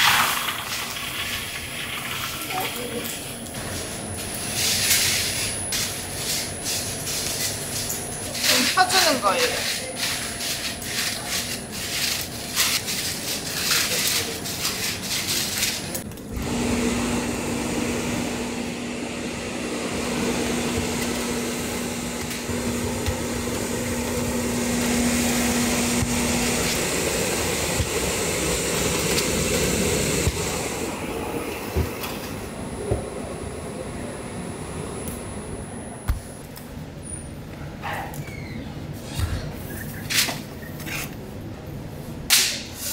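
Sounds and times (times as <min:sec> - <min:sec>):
steady machine drone: 0:02.8 - 0:36.4.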